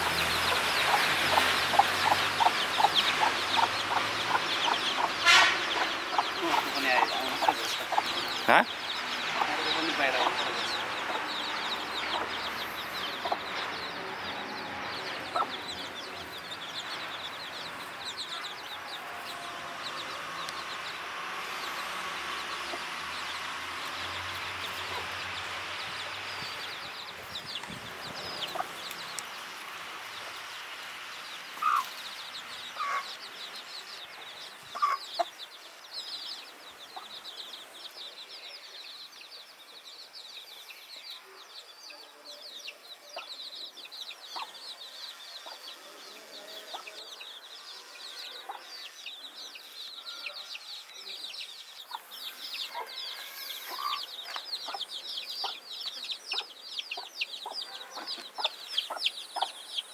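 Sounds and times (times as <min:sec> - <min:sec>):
chicken clucks: 0:00.0 - 0:20.9, 0:26.4 - 0:29.7, 0:31.6 - 0:32.1, 0:32.7 - 0:33.3, 0:34.2 - 0:35.4, 0:44.3 - 0:44.6, 0:45.4 - 0:47.2, 0:51.9 - 0:59.8
chicks peeping: 0:00.0 - 0:59.9.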